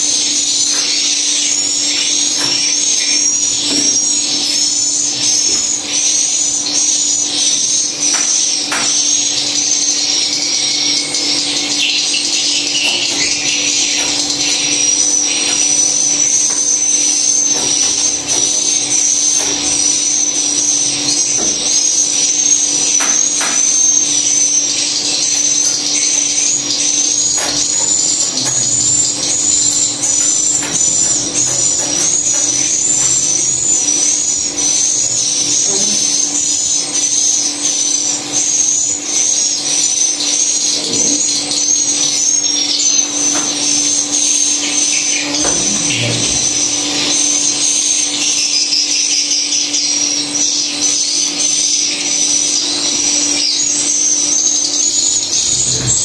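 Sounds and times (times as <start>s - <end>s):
swiftlets twittering chirps: 0.0s - 56.0s.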